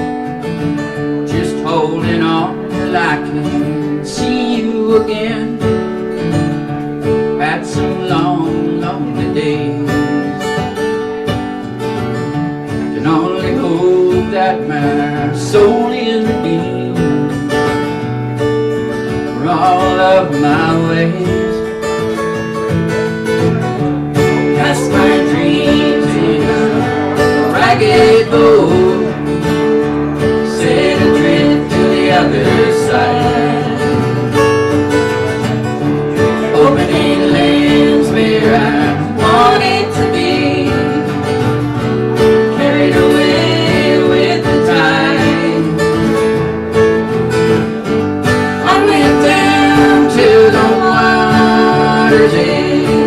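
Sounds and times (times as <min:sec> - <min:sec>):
acoustic guitar: 0:00.0 - 0:53.0
live country song: 0:00.0 - 0:53.0
person singing: 0:24.3 - 0:29.4, 0:30.4 - 0:34.3, 0:36.3 - 0:41.4, 0:42.5 - 0:46.0, 0:48.6 - 0:53.0.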